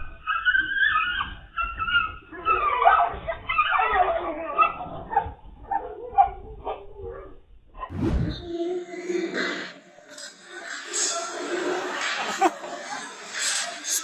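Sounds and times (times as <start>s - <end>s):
dog barking and yelping: 0.2s - 6.9s.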